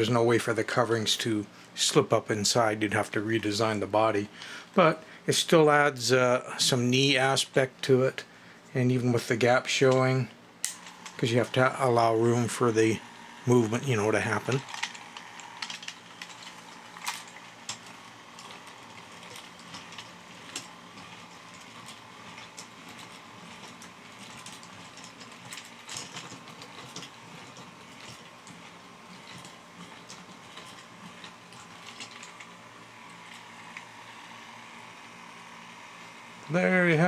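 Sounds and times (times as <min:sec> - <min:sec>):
robot motors whirring: 0:10.8 - 0:17.4.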